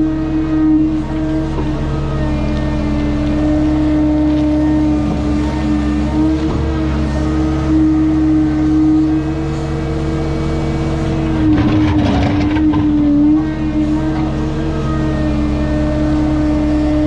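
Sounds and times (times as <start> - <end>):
diesel engine at high revs: 0.0 - 17.0
clattering and scraping: 11.4 - 13.2.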